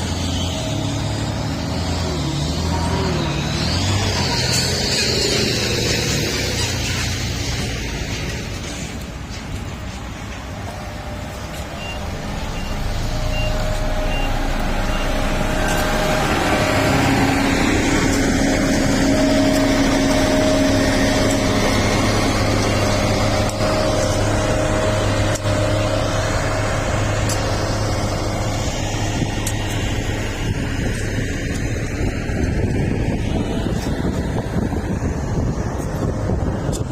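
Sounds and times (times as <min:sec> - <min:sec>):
heavy machine engine running: 0:00.0 - 0:36.9
faint short beeps: 0:11.8 - 0:15.2.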